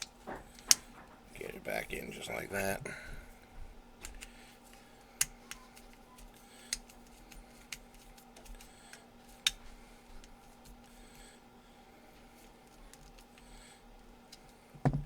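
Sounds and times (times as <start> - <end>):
screwdriver clicks and handling ticks: 4.0 - 10.9, 12.6 - 13.5, 14.3 - 14.6.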